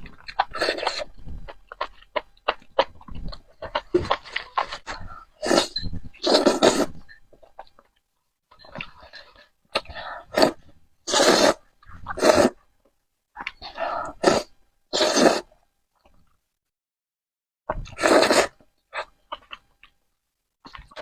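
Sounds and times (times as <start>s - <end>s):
person slurping noodles: 4.4s - 7.0s, 10.0s - 12.6s, 13.8s - 15.5s, 17.8s - 18.6s.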